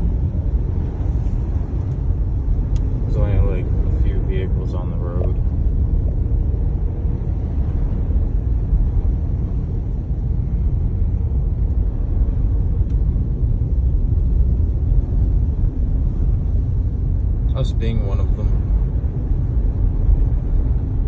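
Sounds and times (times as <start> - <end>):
car engine: 0.0 - 21.0
road and tyre noise: 0.0 - 21.0.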